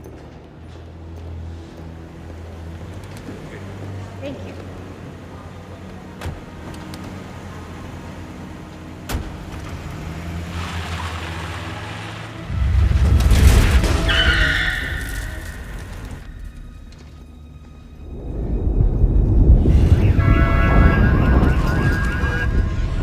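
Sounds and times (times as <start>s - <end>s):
loud deep rumble: 12.4s - 23.0s
high screech: 13.8s - 16.6s.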